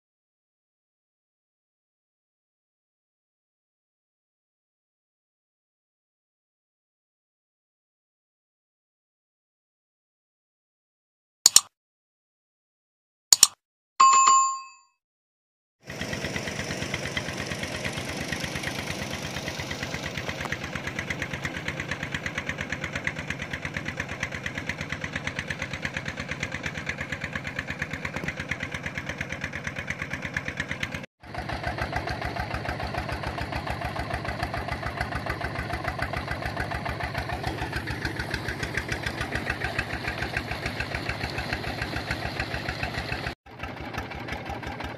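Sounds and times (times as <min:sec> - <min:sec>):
sharp clicks: 0:11.5 - 0:11.7, 0:13.3 - 0:13.6
short chime: 0:14.0 - 0:14.9.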